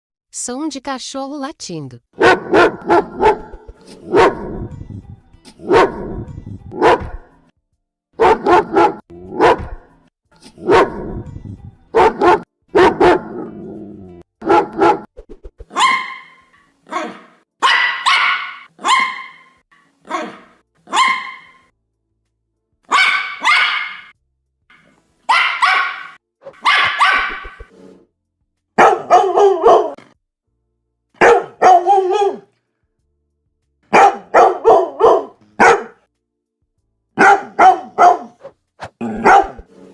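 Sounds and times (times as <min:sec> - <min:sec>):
dog barking: 0:02.2 - 0:04.6, 0:05.6 - 0:07.2, 0:08.2 - 0:09.8, 0:10.6 - 0:11.1, 0:11.9 - 0:13.4, 0:14.4 - 0:15.1, 0:15.7 - 0:21.7, 0:22.9 - 0:24.1, 0:25.3 - 0:27.7, 0:28.8 - 0:30.0, 0:31.2 - 0:32.5, 0:33.9 - 0:36.0, 0:37.2 - 0:39.7.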